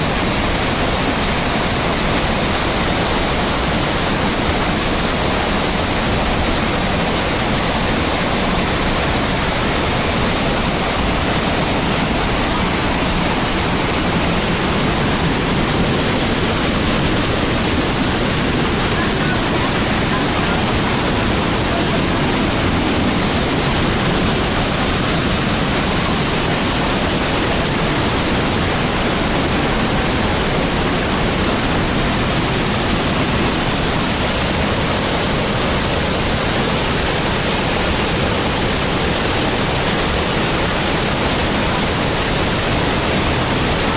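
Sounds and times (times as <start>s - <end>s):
waterfall rushing: 0.0s - 43.9s.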